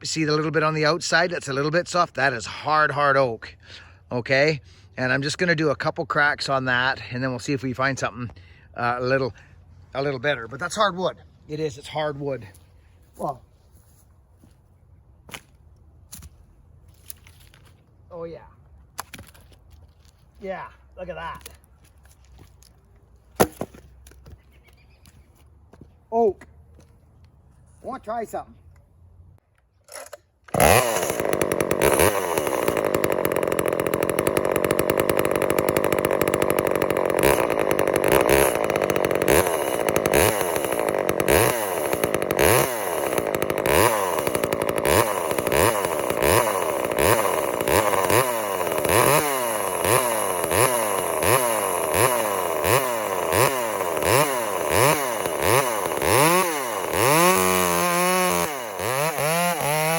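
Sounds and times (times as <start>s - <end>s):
chainsaw cutting wood: 23.4s - 24.3s, 29.9s - 59.9s.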